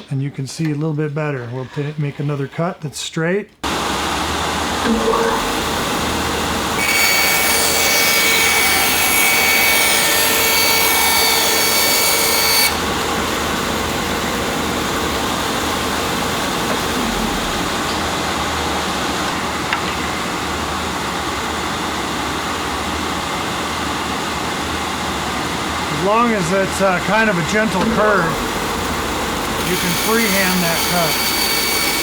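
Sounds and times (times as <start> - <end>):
band saw cutting wood: 3.6 - 20.2, 24.6 - 32.0.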